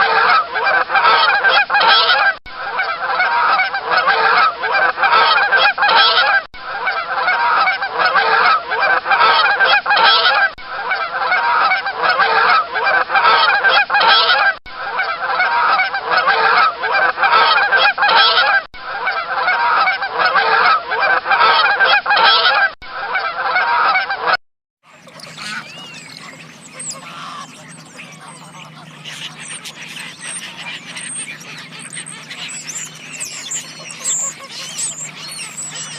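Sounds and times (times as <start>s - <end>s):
geese honking: 24.9s - 35.9s
low steady hum: 24.9s - 35.9s.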